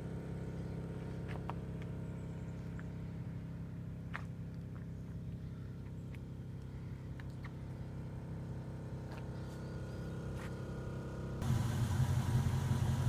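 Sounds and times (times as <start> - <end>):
air compressor running: 9.4 - 13.0.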